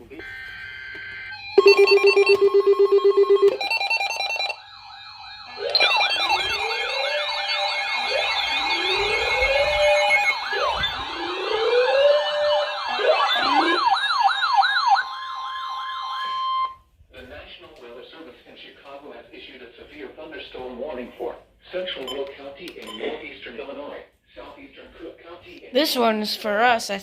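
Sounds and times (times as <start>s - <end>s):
pulsed beeping: 0.2s - 12.2s
siren tones sweeping: 0.2s - 16.8s.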